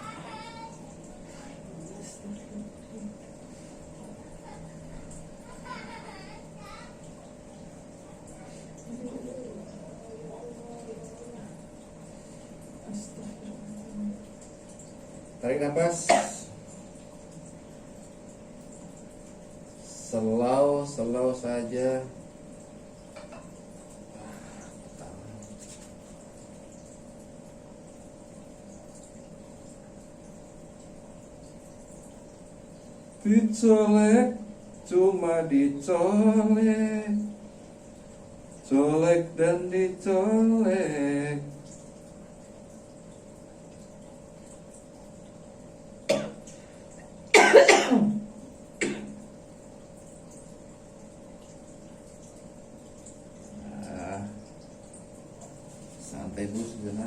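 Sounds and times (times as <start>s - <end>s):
faint hum: 0.0s - 57.0s
person coughing: 16.0s - 16.5s, 46.1s - 46.4s, 47.3s - 48.2s, 48.8s - 49.2s.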